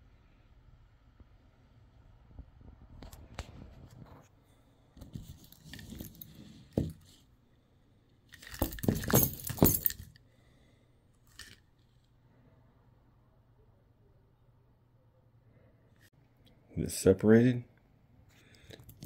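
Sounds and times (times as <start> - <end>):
keys jangling: 8.3 - 10.2, 18.8 - 19.0.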